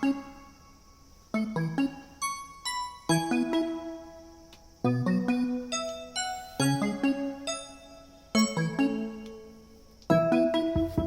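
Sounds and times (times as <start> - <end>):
light keyboard melody: 0.0 - 11.0.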